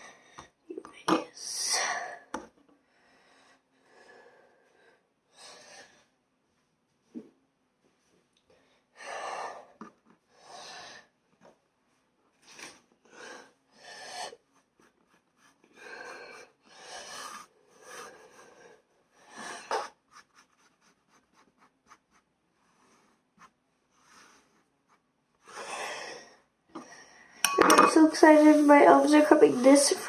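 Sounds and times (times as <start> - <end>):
cloth wiping table: 20.1 - 25.0, 28.0 - 30.0.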